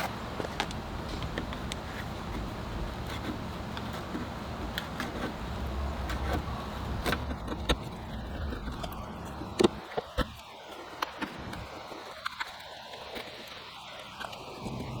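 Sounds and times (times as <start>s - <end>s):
steady low rumble: 0.0s - 10.4s, 14.4s - 15.0s.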